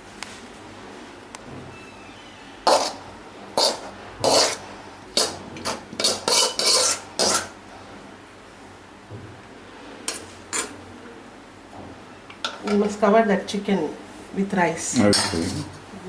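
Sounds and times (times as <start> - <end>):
metal spoon scraping a pot: 2.7 - 3.0, 3.6 - 4.6, 5.2 - 7.6, 10.1 - 10.8.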